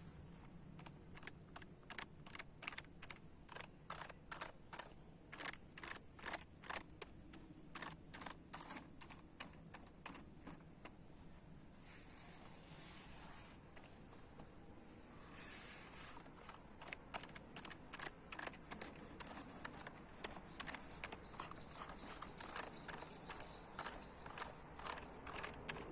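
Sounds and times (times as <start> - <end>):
computer keyboard clicks: 0.8 - 11.0, 16.2 - 25.9.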